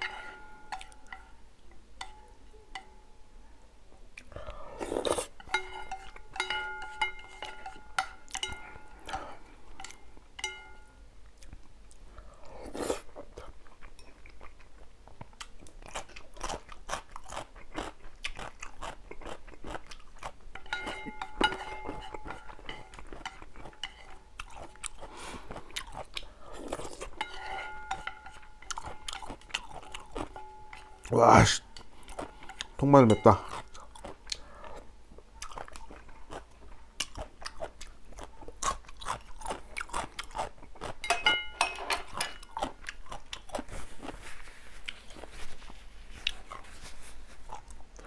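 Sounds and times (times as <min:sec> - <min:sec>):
person chewing crunchy food: 0:11.4 - 0:41.1, 0:41.8 - 0:48.0.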